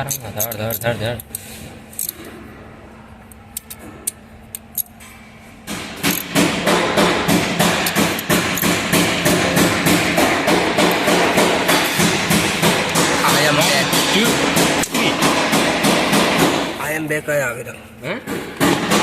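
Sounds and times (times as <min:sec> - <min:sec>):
rapid hammer blows: 0:05.7 - 0:16.8.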